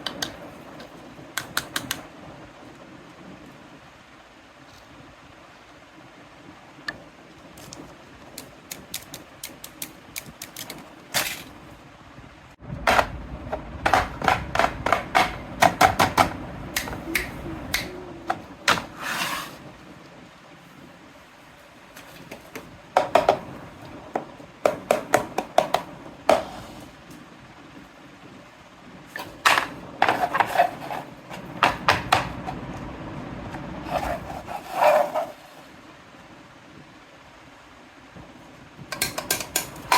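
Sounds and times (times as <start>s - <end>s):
toy pieces clicking and clattering: 8.4s - 11.5s
low rumble: 12.3s - 15.7s.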